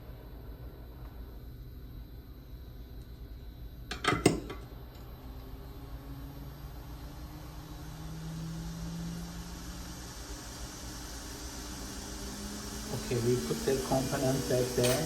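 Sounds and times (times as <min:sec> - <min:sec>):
low hum of bench equipment: 0:00.0 - 0:15.0
hiss: 0:06.4 - 0:15.0.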